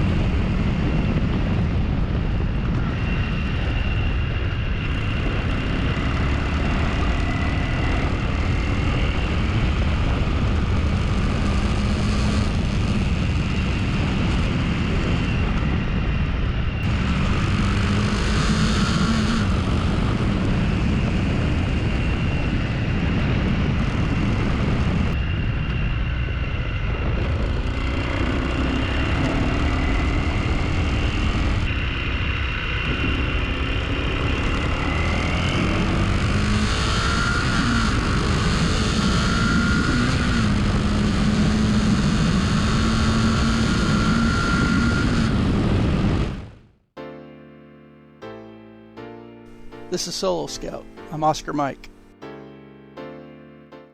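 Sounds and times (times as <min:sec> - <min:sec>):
wind rumble: 0:00.0 - 0:36.6
motorcycle engine revving: 0:16.8 - 0:19.9.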